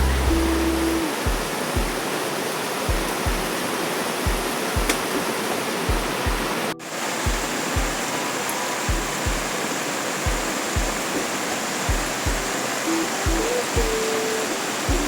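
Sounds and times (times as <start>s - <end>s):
music with kick-drum beat: 0.0s - 2.1s, 2.9s - 3.6s, 4.3s - 5.1s, 5.9s - 6.6s, 7.3s - 8.1s, 8.9s - 9.6s, 10.3s - 11.1s, 11.8s - 12.6s, 13.2s - 14.0s
constant rushing noise: 0.0s - 15.0s.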